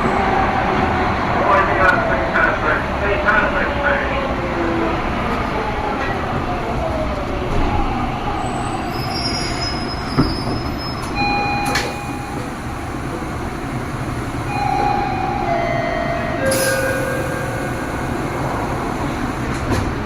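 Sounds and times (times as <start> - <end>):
subway train rumble: 0.0 - 20.0
wheels squealing: 8.5 - 12.7.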